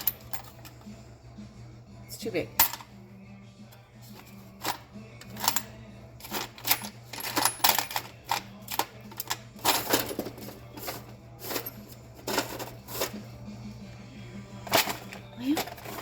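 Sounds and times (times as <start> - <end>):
metal screws clattering: 4.1 - 13.2.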